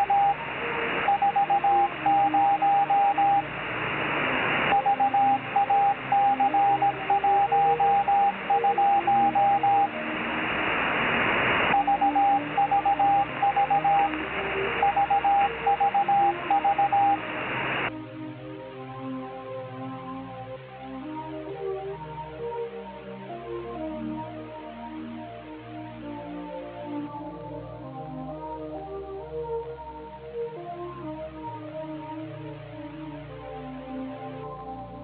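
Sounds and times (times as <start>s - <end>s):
morse code beeps: 0.0s - 0.4s, 1.0s - 3.5s, 4.7s - 10.0s, 11.7s - 17.4s
music: 0.0s - 3.6s, 4.7s - 10.5s, 11.7s - 35.0s
radio band hiss: 0.0s - 17.9s.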